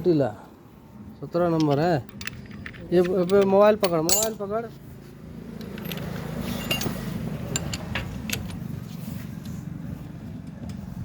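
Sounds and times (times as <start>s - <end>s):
hand tools clinking: 1.6s - 4.5s, 5.6s - 8.6s
engine humming: 1.6s - 11.0s.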